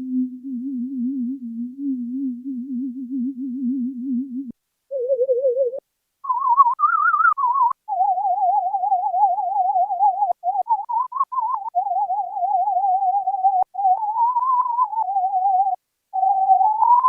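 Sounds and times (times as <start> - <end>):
synthesizer whistle tone: 4.9 - 17.0.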